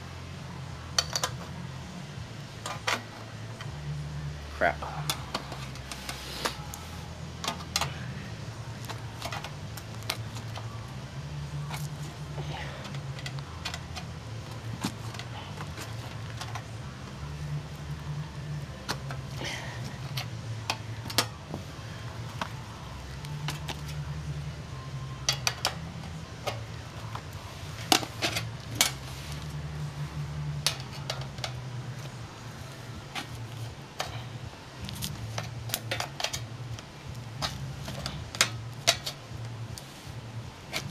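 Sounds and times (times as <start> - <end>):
low hum: 0.0 - 40.9.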